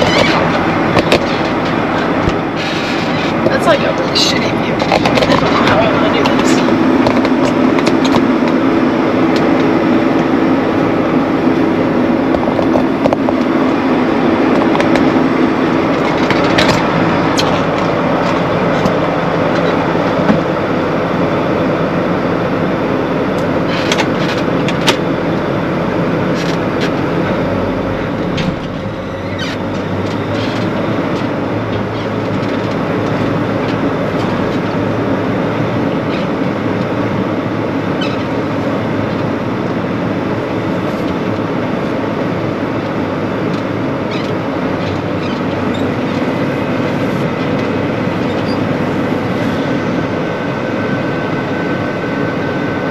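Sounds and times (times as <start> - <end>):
sharp rattles and clicks: 0.0 - 8.6, 15.9 - 20.4
heavy harvest machinery running: 0.0 - 52.9.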